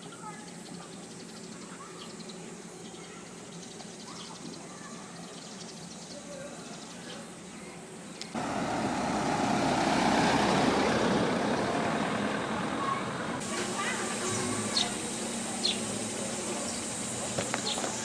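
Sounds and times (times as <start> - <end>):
faint chirps: 13.5 - 18.0.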